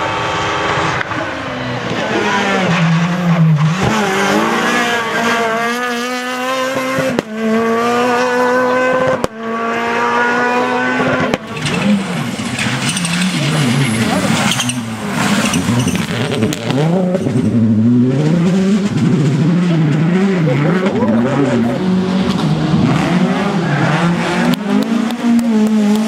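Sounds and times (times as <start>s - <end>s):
rally car engine at full throttle: 0.0s - 26.0s.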